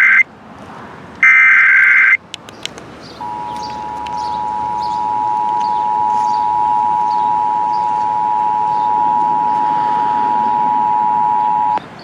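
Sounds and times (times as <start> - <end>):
two-tone alert signal: 3.2 - 11.8.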